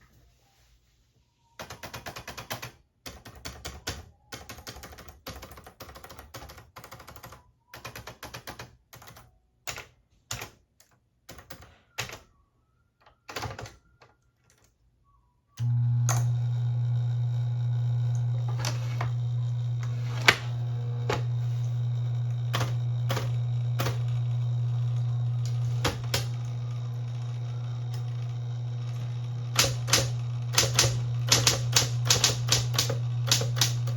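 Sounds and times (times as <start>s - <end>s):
typewriter motor humming: 15.6s - 33.9s
typewriter key clacks: 29.6s - 33.8s.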